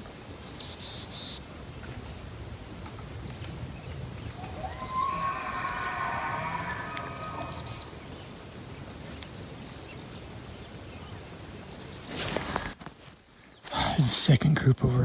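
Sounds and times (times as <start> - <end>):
rustle: 0.0 - 13.6
small birds chirping: 0.3 - 12.3
elk bugling: 4.0 - 8.3.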